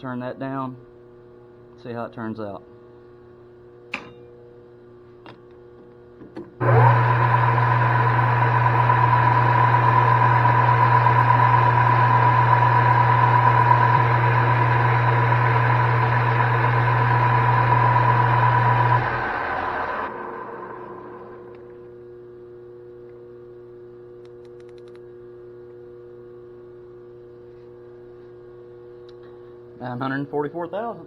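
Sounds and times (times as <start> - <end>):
metal lathe humming and whining: 6.6 - 21.8.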